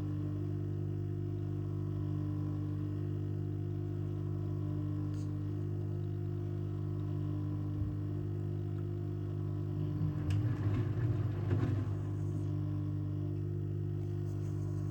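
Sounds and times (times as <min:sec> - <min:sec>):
washing machine running: 0:05.5 - 0:14.9.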